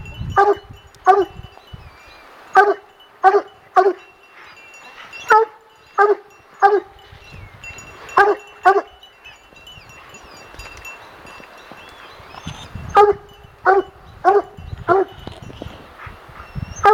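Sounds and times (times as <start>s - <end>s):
dogs barking: 0.3s - 1.4s, 2.6s - 4.2s, 5.0s - 7.0s, 8.1s - 9.5s, 12.9s - 15.2s, 15.9s - 16.9s.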